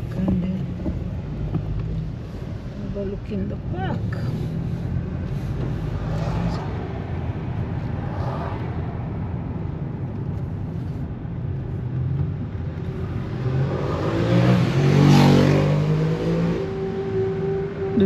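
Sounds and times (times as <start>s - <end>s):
road traffic rumble: 0.0s - 18.0s
vehicle engine accelerating: 12.0s - 18.0s.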